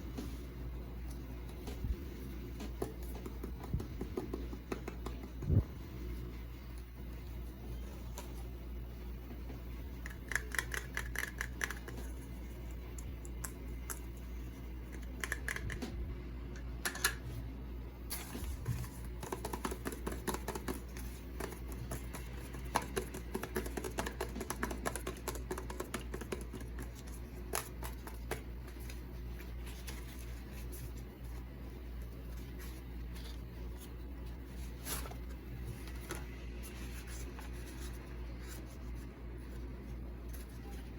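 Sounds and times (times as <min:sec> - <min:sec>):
steady low hum: 0:00.0 - 0:40.9
clicks taps and crinkly scratching: 0:18.6 - 0:31.4.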